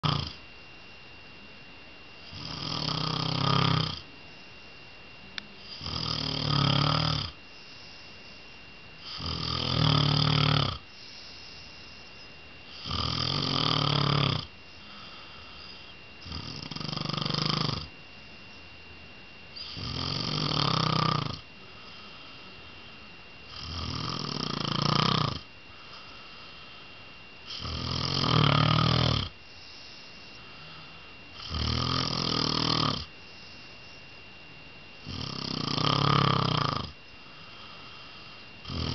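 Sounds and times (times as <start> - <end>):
man snoring: 0.0 - 0.4, 2.2 - 4.1, 5.6 - 8.0, 9.0 - 12.0, 12.7 - 17.9, 19.6 - 22.4, 23.5 - 26.6, 27.4 - 33.6, 35.0 - 38.9
faint high whine: 0.0 - 38.9.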